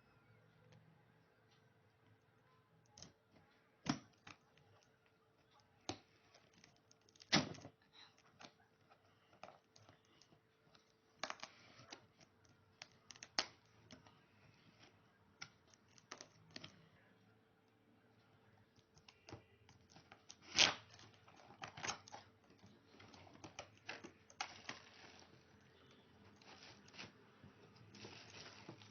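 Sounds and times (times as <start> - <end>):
faint steady hum: 0.0 - 28.9
packaging rustling: 26.2 - 28.9.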